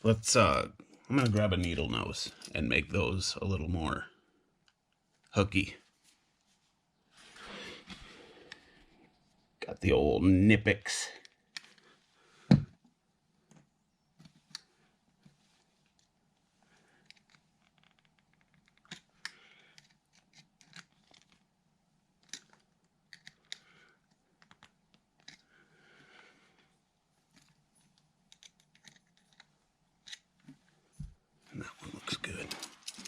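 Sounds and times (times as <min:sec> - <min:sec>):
pliers clicking and scraping on wire: 0:32.3 - 0:33.0.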